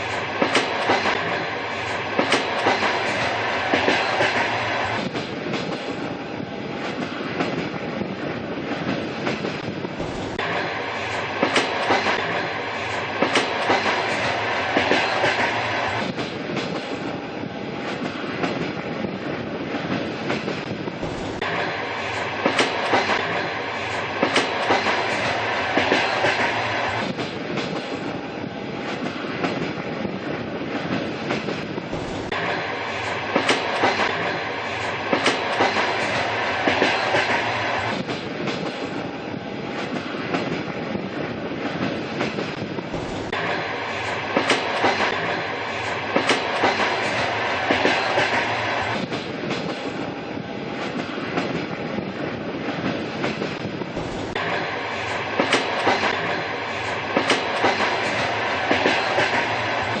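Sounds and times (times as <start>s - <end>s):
train rumbling on rails: 0.0s - 60.0s
wheels clacking over rail joints: 0.4s - 6.1s, 30.8s - 39.0s, 41.6s - 50.0s, 52.8s - 60.0s.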